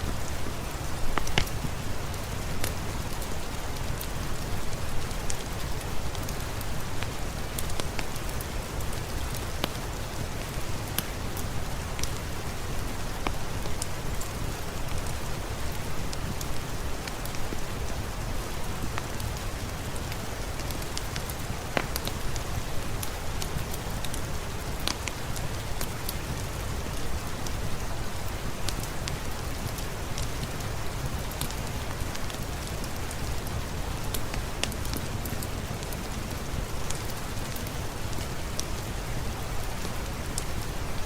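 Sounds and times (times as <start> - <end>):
steady rainfall: 0.0 - 41.0
wood fire crackling: 0.0 - 41.0.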